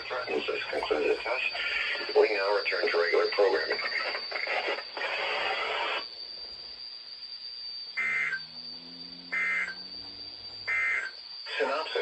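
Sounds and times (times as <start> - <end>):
shrill two-tone digital squawks: 8.0 - 12.0.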